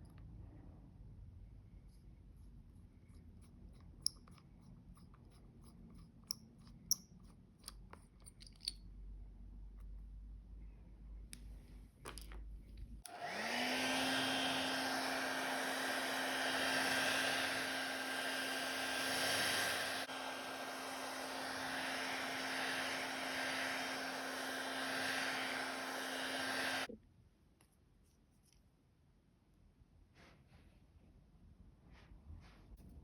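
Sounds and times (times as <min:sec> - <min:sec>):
hot-air blower motor hum: 0:13.0 - 0:26.9.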